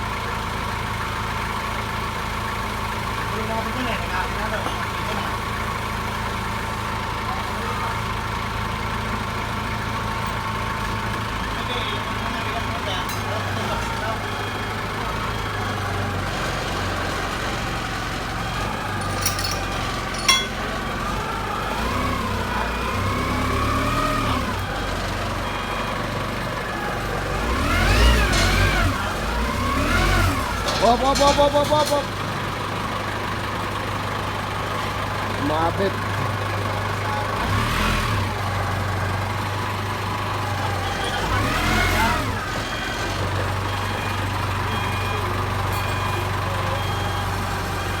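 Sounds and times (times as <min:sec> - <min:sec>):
forklift engine idling: 0:00.0 - 0:48.0
sharp metallic clinks: 0:18.8 - 0:20.9.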